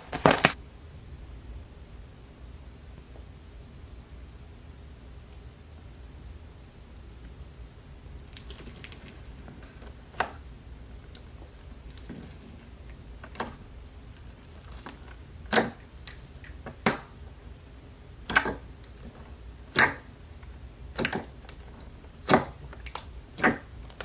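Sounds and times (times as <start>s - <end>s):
slime clicking and popping: 18.2s - 20.1s, 20.9s - 24.0s.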